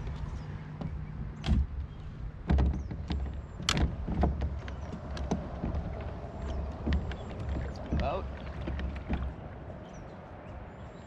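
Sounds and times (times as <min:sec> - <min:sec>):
wind rumble on microphone: 0:00.0 - 0:11.0
gear knocking and clicking: 0:02.4 - 0:09.4.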